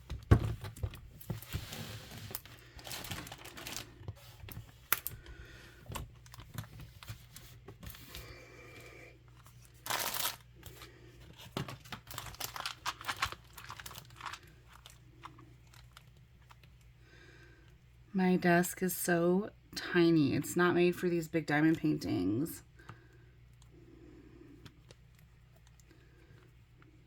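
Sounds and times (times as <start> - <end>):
plastic packaging crinkling: 0.8 - 5.3, 9.4 - 16.8.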